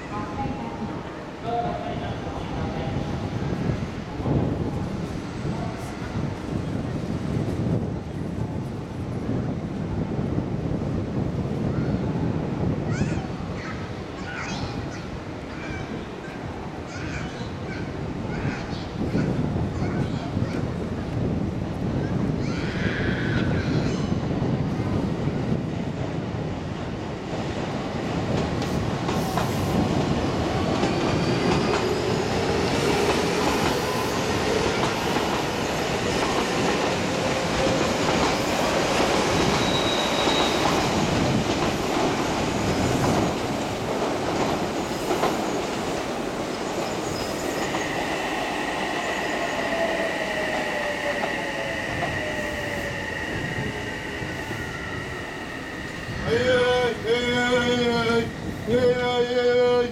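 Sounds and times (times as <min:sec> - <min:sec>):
steady high tone: 0:47.3 - 0:57.6.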